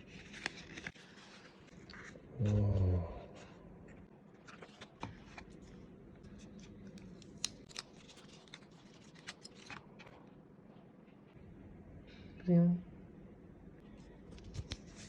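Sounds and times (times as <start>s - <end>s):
cardboard and paper crinkling: 0.0s - 2.2s, 4.4s - 10.2s, 14.3s - 15.0s.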